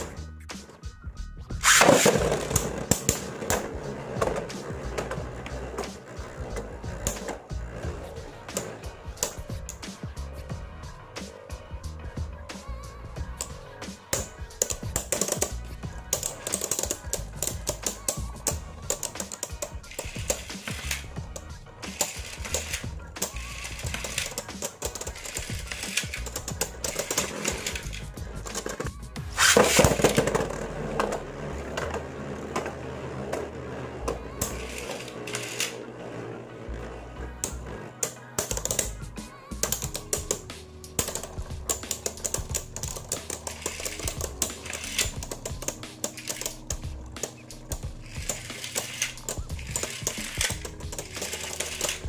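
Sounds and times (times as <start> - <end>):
background music with low beat: 0.0 - 52.0
rapid clicking and rattling: 14.1 - 30.5, 38.0 - 52.0.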